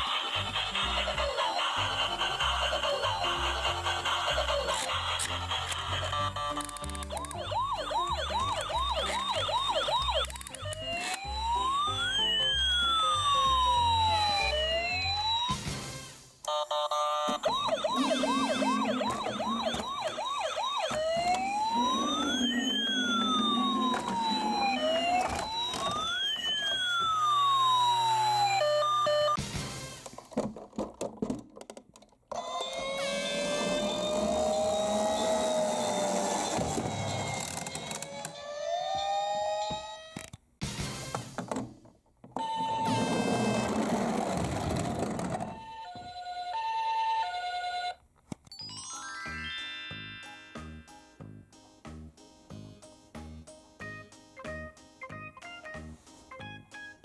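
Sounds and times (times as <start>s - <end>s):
toy siren wailing: 0.0s - 15.6s, 16.5s - 29.4s, 32.3s - 40.3s, 42.4s - 44.4s, 45.4s - 48.0s
rising musical sweep: 17.8s - 26.2s.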